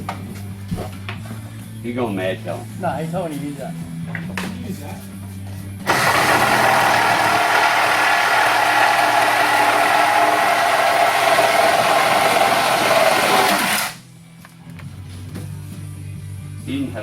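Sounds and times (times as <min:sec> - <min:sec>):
electric power tool running: 0:05.8 - 0:14.0.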